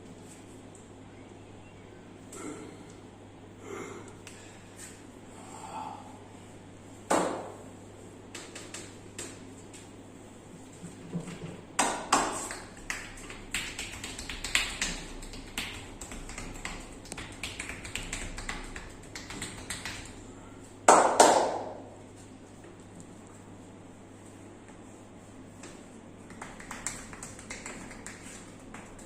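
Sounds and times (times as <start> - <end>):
hands tapping and slapping skin: 8.3 - 9.4, 11.8 - 20.2, 25.6 - 29.0.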